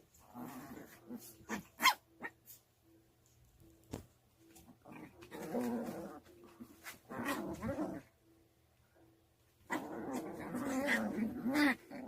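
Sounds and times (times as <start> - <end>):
puppies growling: 0.2 - 1.6, 4.8 - 8.2, 9.7 - 12.0.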